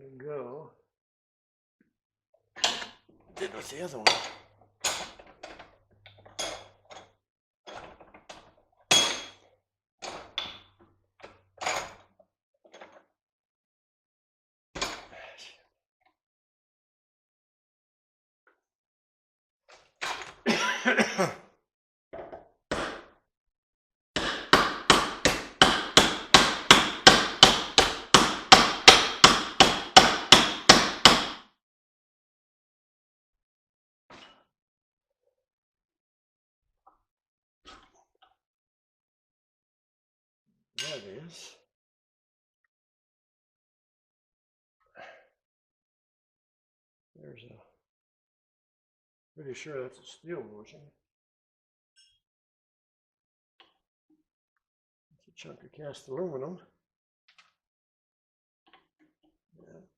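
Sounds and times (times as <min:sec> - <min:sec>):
hammer striking metal: 0:24.2 - 0:31.4.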